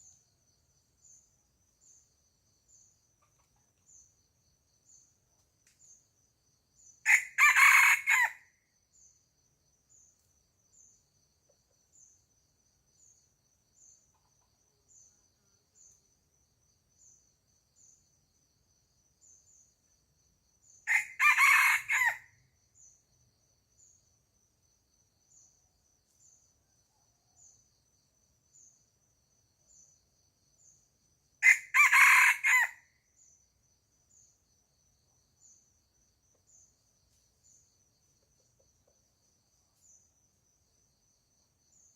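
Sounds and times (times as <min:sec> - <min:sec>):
high-pitched insect chirp: 0:00.0 - 0:41.9
rooster crowing: 0:07.1 - 0:08.4, 0:20.9 - 0:22.2, 0:31.4 - 0:32.8.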